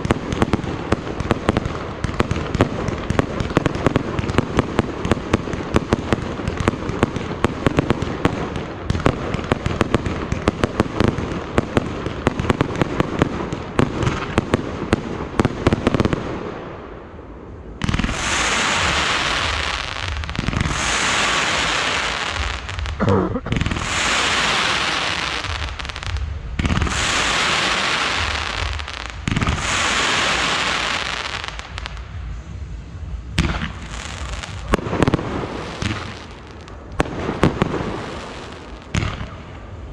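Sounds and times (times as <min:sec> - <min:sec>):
fireworks crackling bangs: 0:00.0 - 0:16.7, 0:17.8 - 0:39.9
hissing crackling firework bursts: 0:17.8 - 0:39.9.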